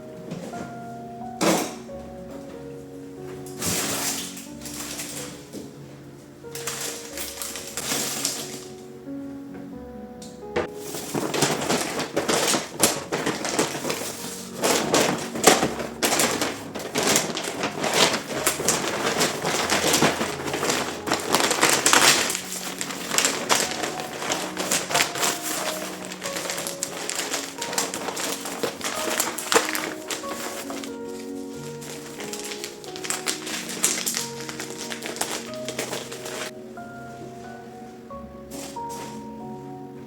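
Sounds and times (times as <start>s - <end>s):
soft background music: 0.0s - 40.0s
clicks and crackles: 3.4s - 5.7s, 6.4s - 8.8s, 10.2s - 36.5s.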